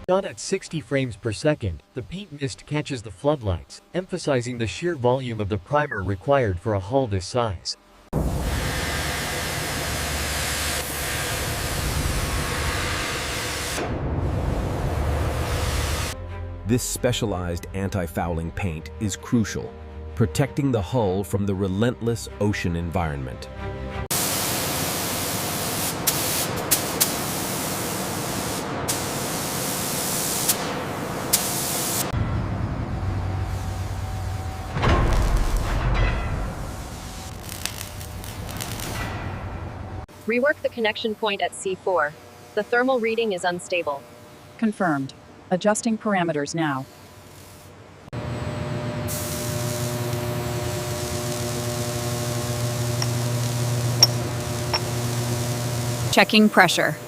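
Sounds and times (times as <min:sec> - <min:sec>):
paint spray gun hissing: 0:24.1 - 0:32.1, 0:36.6 - 0:39.0, 0:46.9 - 0:47.7, 0:49.1 - 0:56.2
low machinery hum: 0:32.2 - 0:35.9, 0:48.2 - 0:57.0
low hum: 0:32.2 - 0:40.1.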